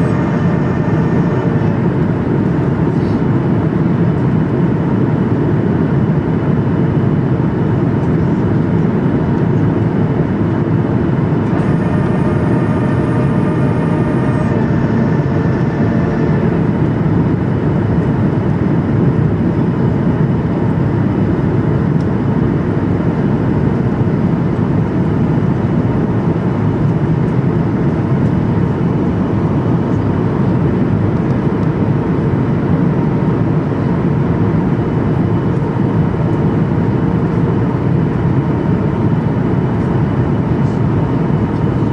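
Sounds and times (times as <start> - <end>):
multi-pitch steady tone: 0.0 - 3.6, 10.7 - 18.6
airplane cabin rumble: 0.0 - 41.9.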